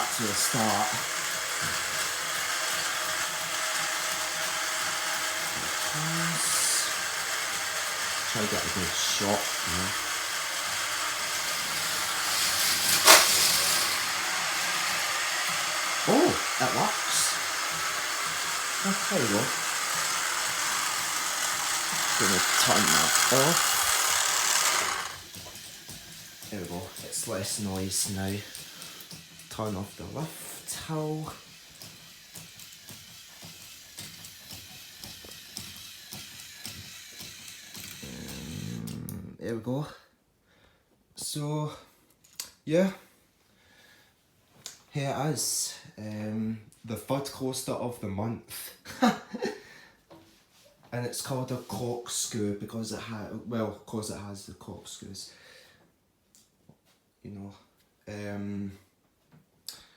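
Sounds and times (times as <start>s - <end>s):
electric motors whirring: 0.0s - 39.2s
sharp clack: 12.3s - 14.1s.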